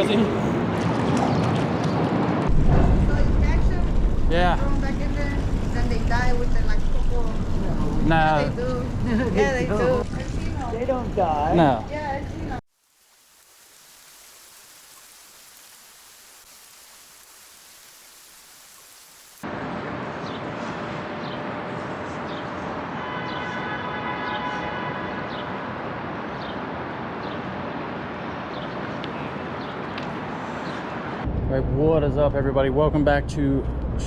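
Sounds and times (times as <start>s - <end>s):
outdoor rushing noise: 0.0s - 12.6s.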